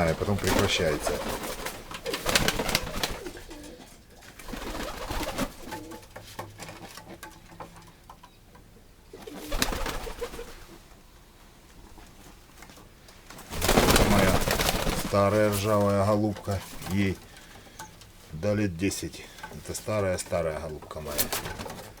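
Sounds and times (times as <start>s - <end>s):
pigeons cooing: 0.0s - 8.0s, 9.1s - 10.9s.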